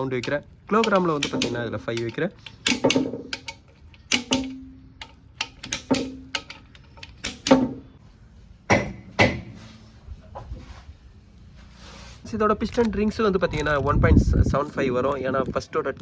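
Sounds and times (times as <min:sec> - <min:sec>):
metallic tool clicks and knocks: 0:00.0 - 0:07.8.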